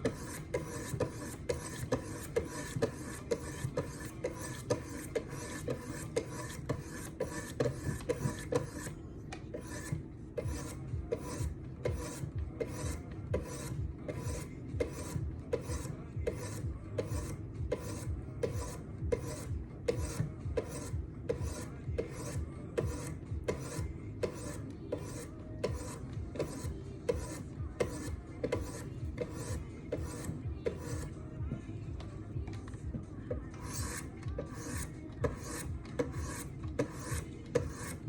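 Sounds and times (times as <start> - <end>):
sharpening stones rasping on knife: 0.0 - 31.2, 33.3 - 38.0.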